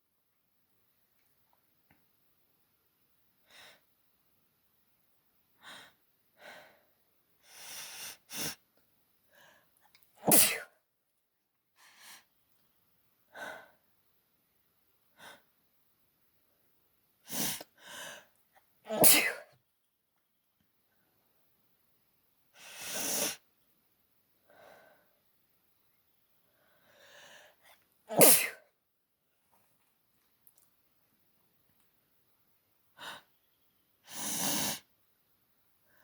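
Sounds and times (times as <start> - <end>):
woman sneezing: 10.3 - 10.7, 18.9 - 19.5, 28.1 - 28.6.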